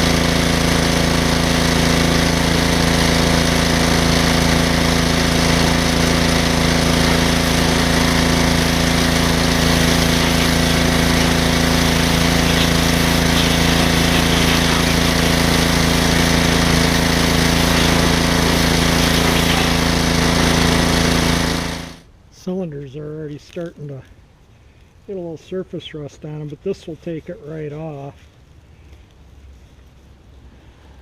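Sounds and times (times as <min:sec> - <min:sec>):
pressure washer spraying: 0:00.0 - 0:22.0.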